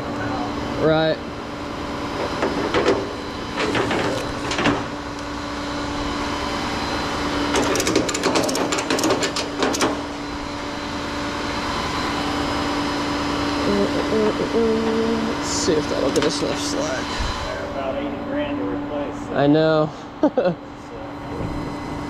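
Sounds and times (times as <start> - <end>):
tow truck engine humming: 1.2 - 8.2, 9.3 - 17.0.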